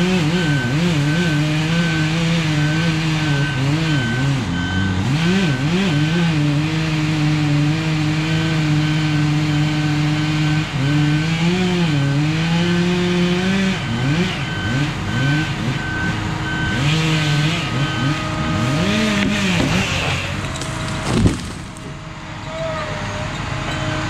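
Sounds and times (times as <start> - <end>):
chainsaw revving: 16.7 - 22.0.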